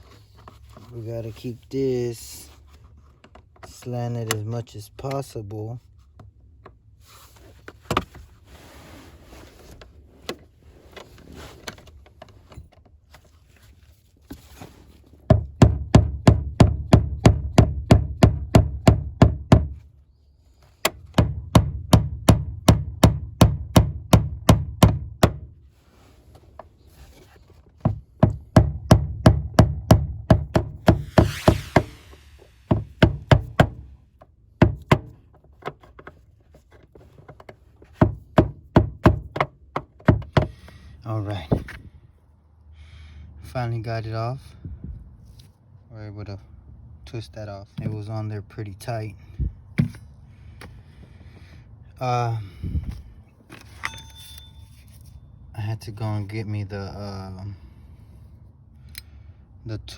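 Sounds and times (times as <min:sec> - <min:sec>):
hammer striking screwdriver: 0:30.3 - 0:33.8
metal scraping: 0:30.8 - 0:33.0.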